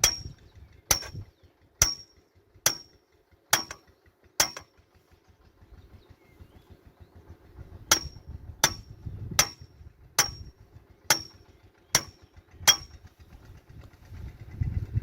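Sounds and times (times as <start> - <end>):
hammer striking metal: 0.0 - 1.2, 1.8 - 3.8, 4.4 - 4.8, 7.9 - 10.5, 11.1 - 11.4, 12.0 - 13.0.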